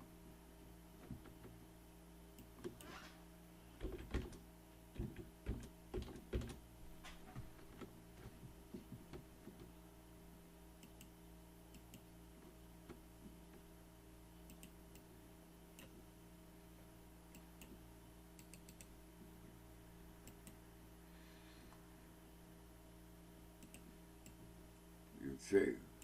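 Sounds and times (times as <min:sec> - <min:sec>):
steady low hum: 0:00.0 - 0:26.0
computer mouse clicks: 0:10.8 - 0:11.1, 0:14.4 - 0:15.1, 0:18.4 - 0:18.9, 0:20.2 - 0:20.6, 0:23.6 - 0:24.4.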